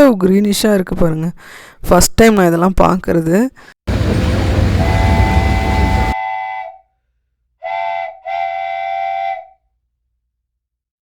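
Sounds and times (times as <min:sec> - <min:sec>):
loud rushing noise: 0:03.9 - 0:06.2
toy train whistle: 0:04.8 - 0:07.0, 0:07.6 - 0:09.7.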